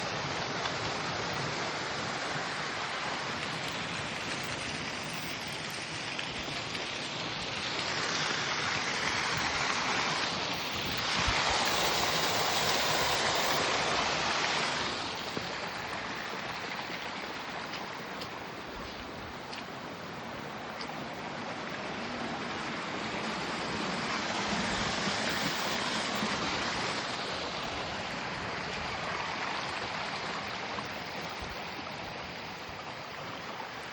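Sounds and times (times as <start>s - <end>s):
stream water rushing: 0.0s - 33.9s.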